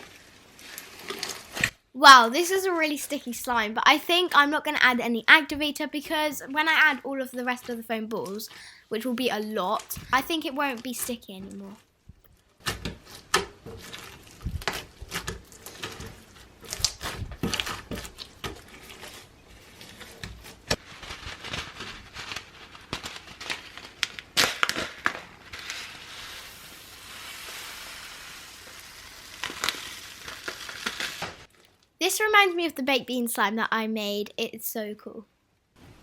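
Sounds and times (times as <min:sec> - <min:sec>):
slime with foam balls being squished: 0:00.0 - 0:02.3, 0:06.1 - 0:31.8.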